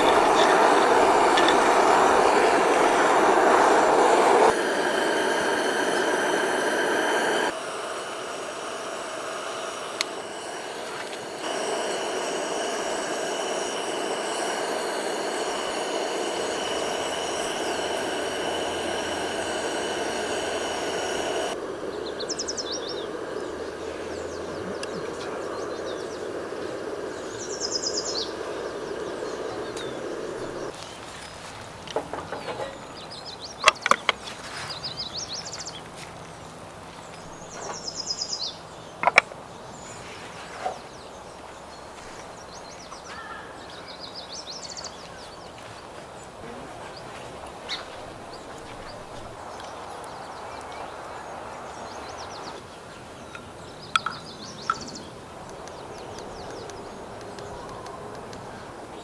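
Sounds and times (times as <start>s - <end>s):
steady hum: 0.0s - 22.0s
bird calling in falling trills: 0.0s - 23.0s.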